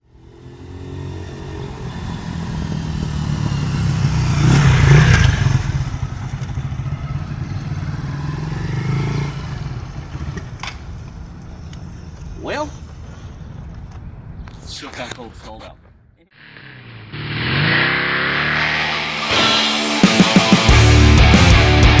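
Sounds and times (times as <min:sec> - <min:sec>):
motorcycle engine passing by: 0:00.0 - 0:14.5, 0:16.4 - 0:22.0.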